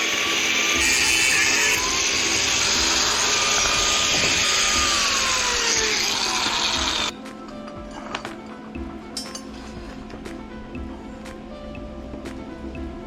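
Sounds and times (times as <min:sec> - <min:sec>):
power tool on steel: 0:00.0 - 0:07.1.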